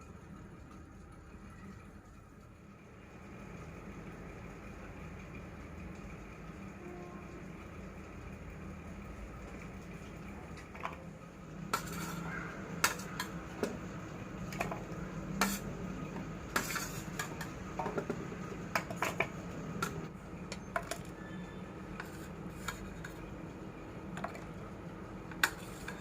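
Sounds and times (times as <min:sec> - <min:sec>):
steady low hum: 0:00.0 - 0:26.0
dishes and utensils clinking: 0:11.7 - 0:13.4, 0:15.4 - 0:15.7, 0:16.5 - 0:18.2.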